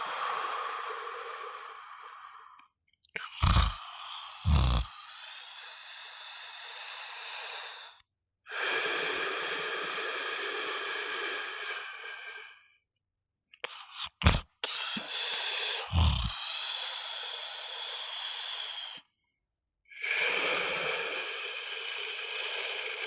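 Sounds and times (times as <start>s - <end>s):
person snoring with whistling tone: 3.4s - 3.8s, 4.4s - 5.0s, 15.8s - 16.4s
short low snoring bursts: 4.4s - 5.0s, 15.9s - 16.4s.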